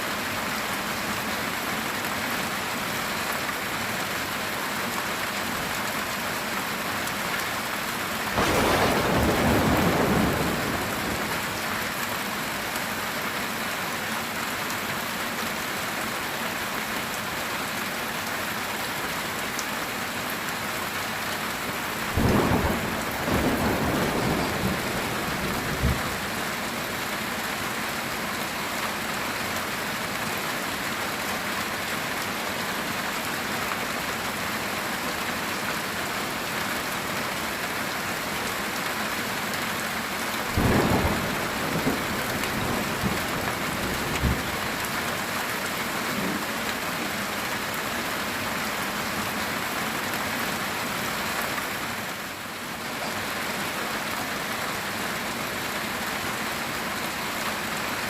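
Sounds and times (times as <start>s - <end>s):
heavy rain on a tin roof: 0.0s - 58.0s
sharp thunder crack: 8.4s - 11.6s
thunder rumbling: 8.4s - 11.7s, 22.2s - 26.4s, 40.5s - 45.1s.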